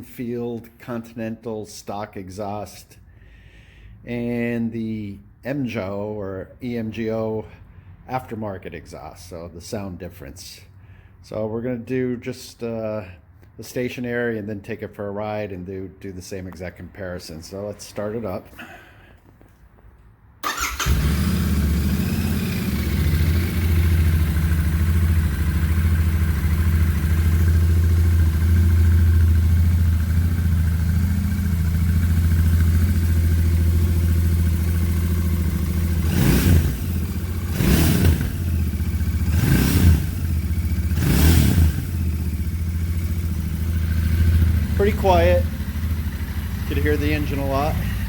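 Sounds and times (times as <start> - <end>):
motorcycle engine idling: 20.4 - 48.0
motorcycle engine revving: 20.4 - 48.0.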